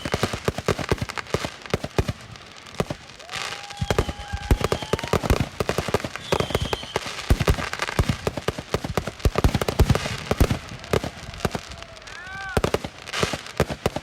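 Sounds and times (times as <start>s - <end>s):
firework whistle: 0.0s - 0.5s, 3.2s - 8.1s
fireworks bangs and crackles: 0.0s - 14.0s.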